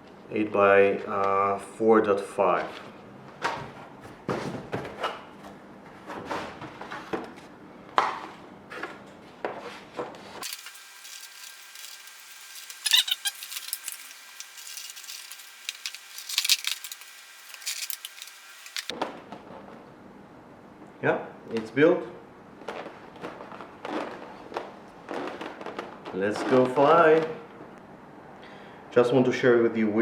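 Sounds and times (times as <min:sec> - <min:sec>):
model kit parts clicking and rattling: 0:10.4 - 0:18.9.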